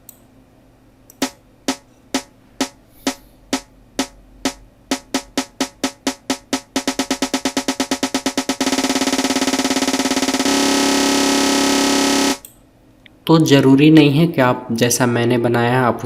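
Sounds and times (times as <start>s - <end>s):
snare drum accelerating roll: 1.2s - 12.4s.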